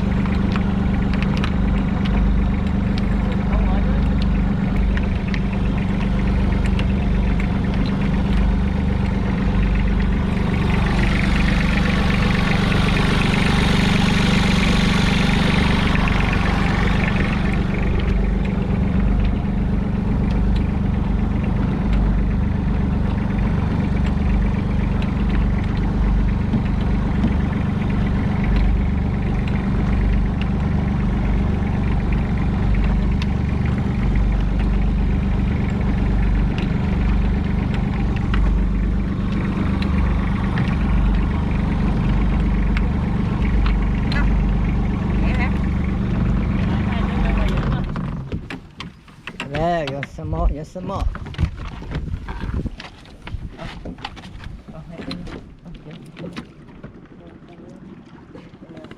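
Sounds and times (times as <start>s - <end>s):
boat engine humming: 0.0s - 58.9s.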